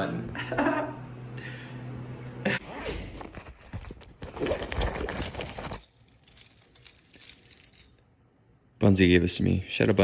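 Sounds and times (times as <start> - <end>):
keys jangling: 4.4 - 8.0, 9.7 - 10.0.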